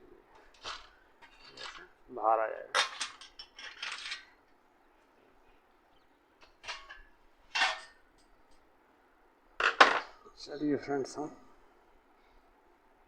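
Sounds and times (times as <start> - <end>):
clattering scrapes: 0.4 - 2.0, 2.8 - 4.4, 6.4 - 8.0.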